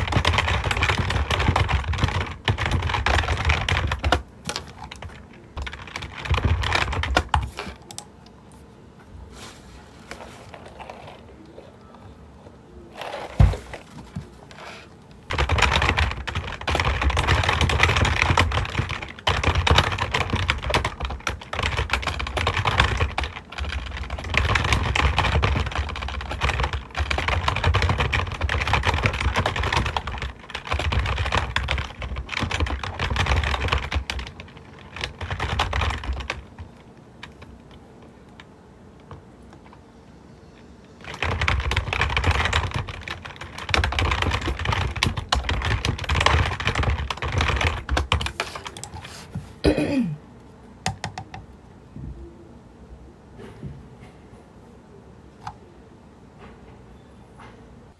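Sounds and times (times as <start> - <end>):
fast typing on keyboard: 0.0 - 8.1, 15.3 - 39.8, 41.0 - 49.1, 50.9 - 51.5.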